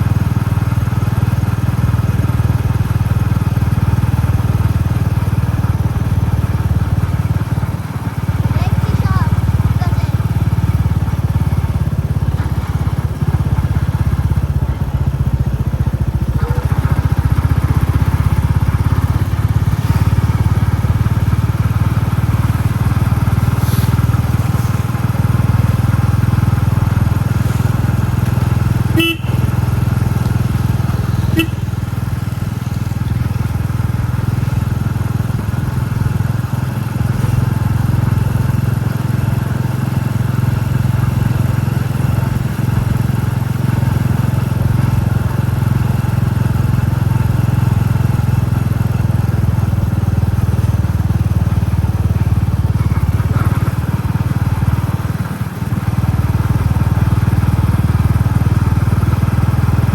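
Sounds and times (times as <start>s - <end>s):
motorcycle engine thumping: 10.2s - 59.9s
horn beeps: 28.8s - 29.8s, 31.2s - 31.8s.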